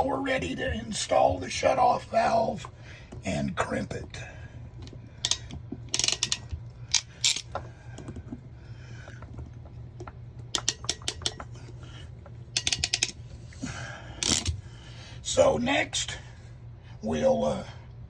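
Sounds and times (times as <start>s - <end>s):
crimp tool ratcheting clicks: 5.2s - 7.5s, 12.6s - 13.2s
metal clicks and clacks: 10.0s - 11.5s, 12.6s - 13.2s.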